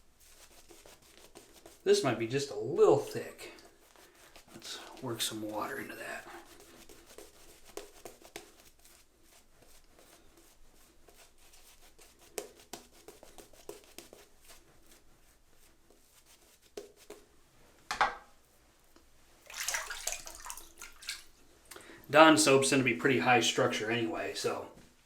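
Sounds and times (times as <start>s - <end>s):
shaving brush whisking lather: 0.1s - 17.3s.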